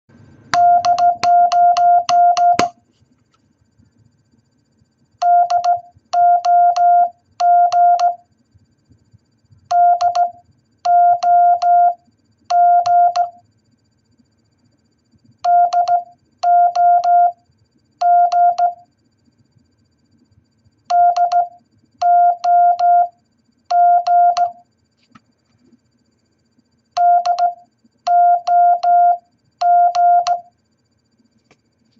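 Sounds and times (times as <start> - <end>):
morse code beeps: 0.6 - 2.8, 5.2 - 8.2, 9.7 - 13.4, 15.4 - 17.4, 18.0 - 18.9, 20.9 - 24.6, 27.0 - 30.5.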